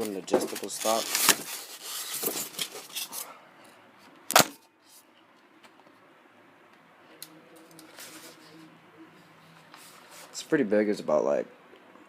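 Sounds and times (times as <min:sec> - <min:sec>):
plastic parts rubbing: 0:00.0 - 0:03.2.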